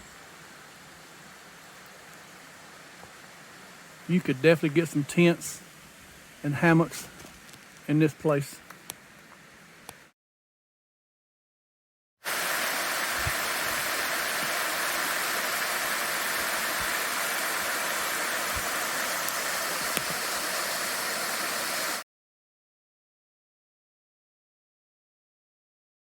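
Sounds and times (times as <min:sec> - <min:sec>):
creek water flowing: 0:00.0 - 0:10.0, 0:12.3 - 0:22.0.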